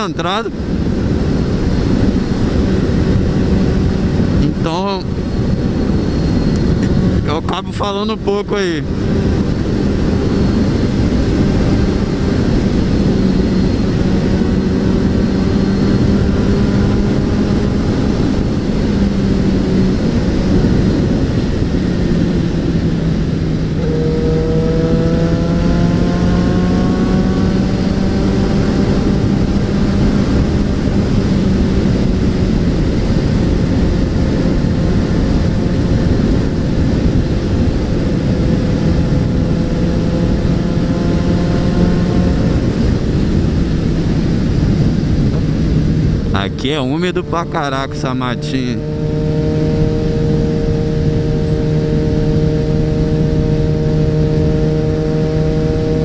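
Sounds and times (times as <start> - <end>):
wind and road noise: 0.0 - 56.0
motorcycle engine running: 8.6 - 56.0.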